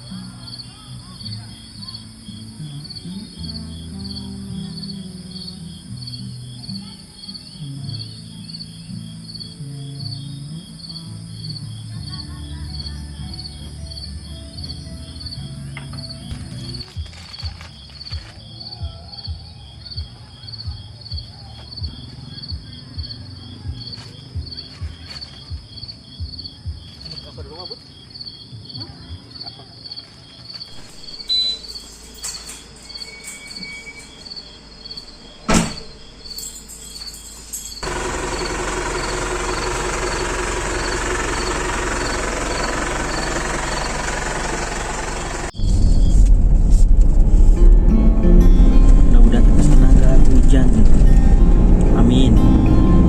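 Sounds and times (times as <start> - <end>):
high insect hiss: 0.0 - 47.4
crickets chirping: 0.0 - 47.8
low dull thumps: 45.5 - 53.0
soft background music: 47.2 - 53.0.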